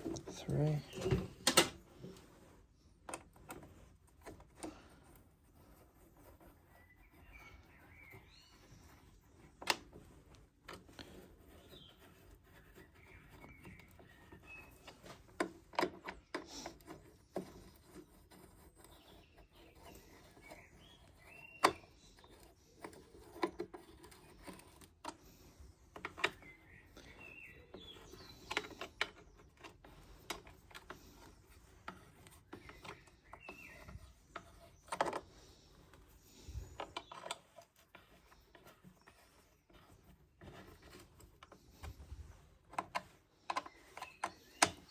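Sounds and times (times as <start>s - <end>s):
faint birds chirping: 0.0s - 44.9s
clicks of tools and plastic parts: 1.0s - 1.8s.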